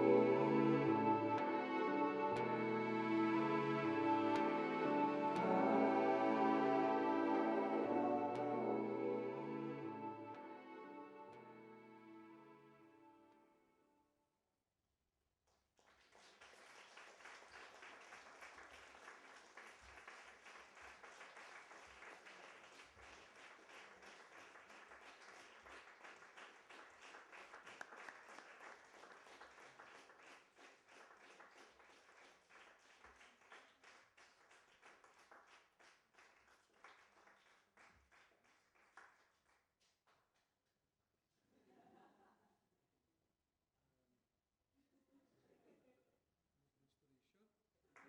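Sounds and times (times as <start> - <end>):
audience applauding: 15.8 - 39.4.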